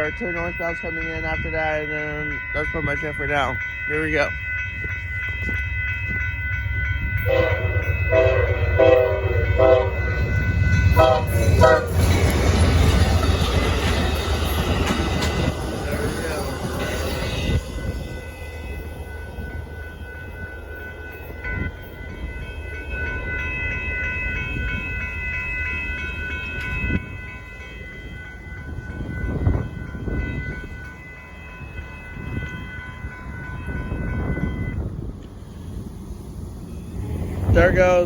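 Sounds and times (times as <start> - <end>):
train rumbling: 0.0 - 38.0
train horn chord: 7.2 - 12.1.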